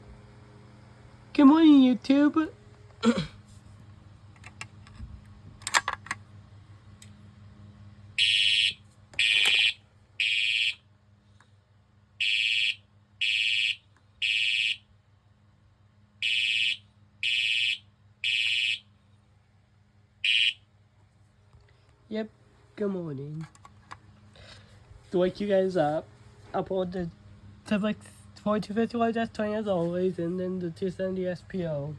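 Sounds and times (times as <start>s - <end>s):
low steady hum: 0.0s - 31.9s
fire alarm horn beeps: 8.2s - 10.8s, 12.2s - 14.8s, 16.2s - 18.9s, 20.2s - 20.6s.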